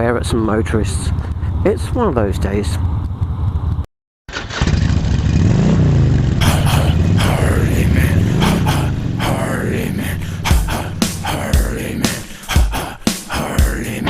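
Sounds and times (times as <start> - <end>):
motorcycle engine revving: 2.8 - 12.3.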